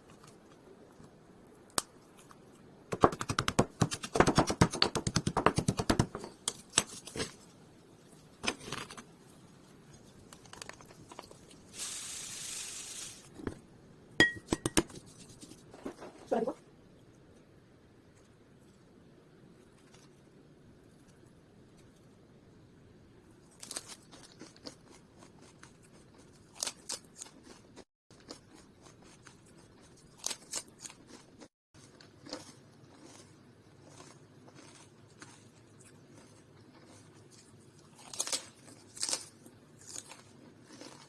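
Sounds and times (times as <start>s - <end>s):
low background noise: 0.0s - 4.7s, 5.4s - 27.6s
crisp crunching or snipping: 23.5s - 27.7s, 28.3s - 41.0s.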